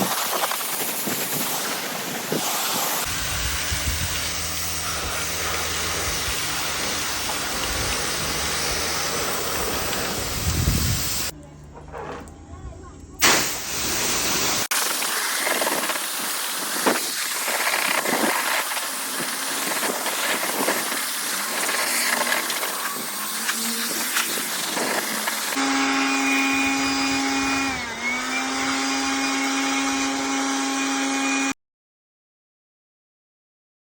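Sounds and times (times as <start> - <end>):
high-pressure water spray hissing: 0.0 - 11.3, 13.2 - 27.7
steady machine hum: 3.0 - 16.8.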